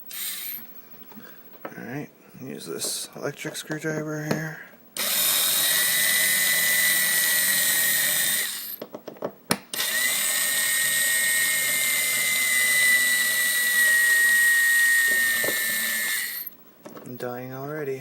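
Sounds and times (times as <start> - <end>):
electric screwdriver motor whine: 0.1 - 0.6, 5.0 - 8.8, 9.8 - 16.5.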